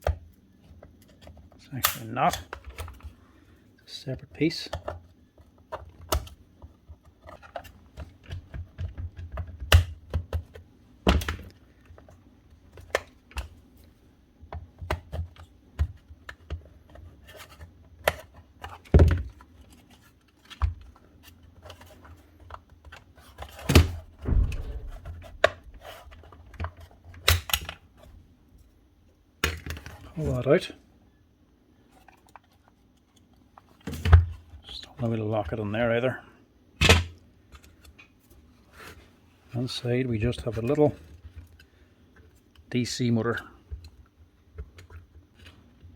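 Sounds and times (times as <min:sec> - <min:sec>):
plastic parts clicking and scraping: 0:04.3 - 0:10.6, 0:14.5 - 0:28.1, 0:31.9 - 0:34.6
plastic knocks: 0:24.2 - 0:25.9.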